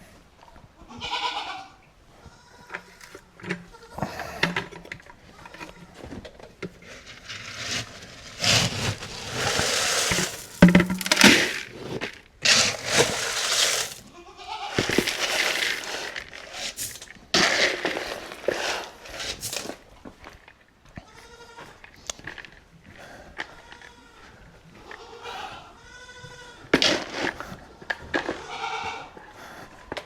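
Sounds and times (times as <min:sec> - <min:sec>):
goats bleating: 0:00.8 - 0:04.6, 0:13.9 - 0:15.9, 0:23.4 - 0:26.8, 0:28.2 - 0:29.2
rustling scraping noise: 0:02.7 - 0:20.6, 0:26.8 - 0:28.7.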